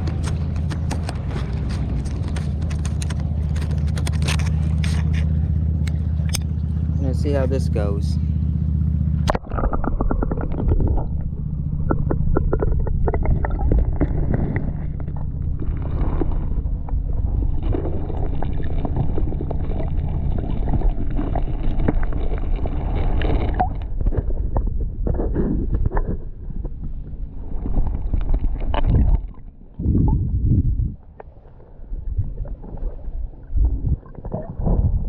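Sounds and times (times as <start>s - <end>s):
steady low drone: 0.0s - 35.0s
water splashing and sloshing: 0.0s - 35.0s
wind buffeting: 23.7s - 31.2s.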